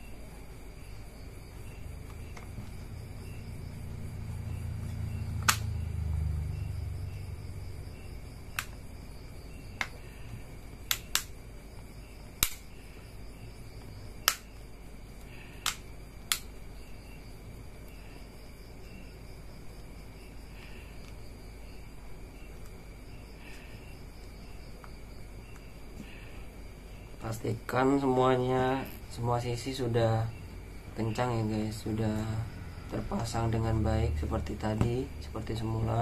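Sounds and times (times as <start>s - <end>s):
low handling rumble: 1.7s - 9.5s.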